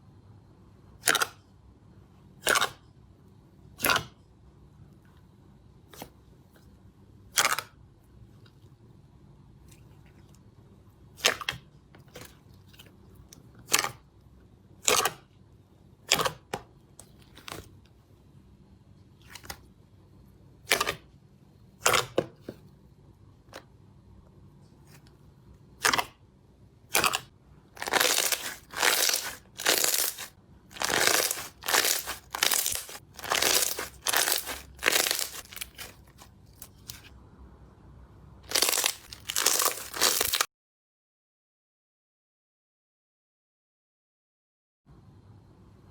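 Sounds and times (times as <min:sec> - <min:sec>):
slime popping and crackling: 0:27.8 - 0:36.0, 0:38.4 - 0:40.5.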